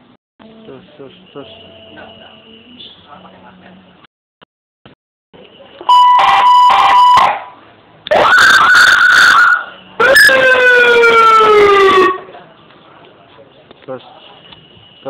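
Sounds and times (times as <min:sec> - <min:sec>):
electronic police siren: 0:05.9 - 0:07.4, 0:08.1 - 0:12.2.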